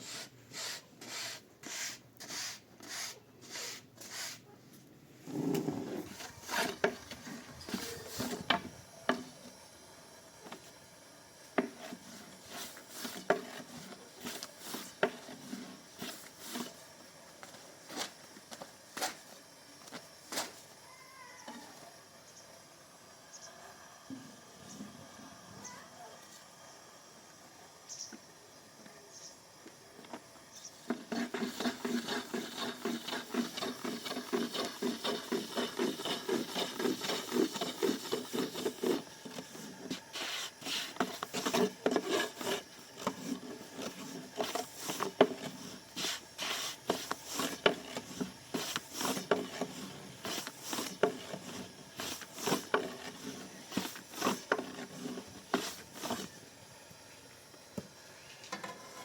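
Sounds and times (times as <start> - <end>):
dough rubbing on wooden board: 0.0 - 4.4, 5.4 - 8.5, 11.6 - 16.8, 30.9 - 56.3.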